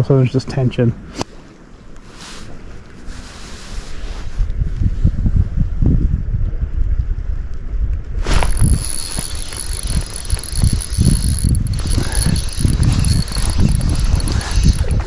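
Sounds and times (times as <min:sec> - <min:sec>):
wind on microphone: 0:02.8 - 0:15.0
fishing reel whirring: 0:08.2 - 0:15.0.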